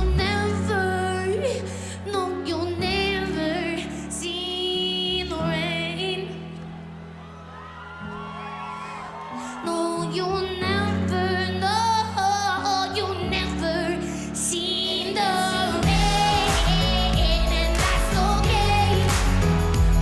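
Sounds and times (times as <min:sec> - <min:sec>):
woman singing lead vocal: 0:00.0 - 0:06.7, 0:09.4 - 0:20.0
low backing chords and bass: 0:15.8 - 0:20.0.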